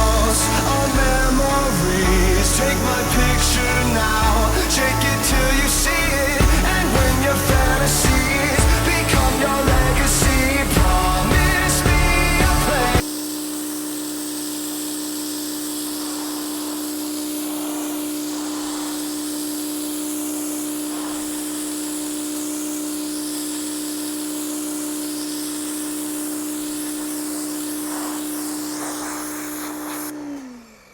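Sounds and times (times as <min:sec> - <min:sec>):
water spray hissing: 0:00.0 - 0:30.4
pressure washer motor hum: 0:00.0 - 0:30.9.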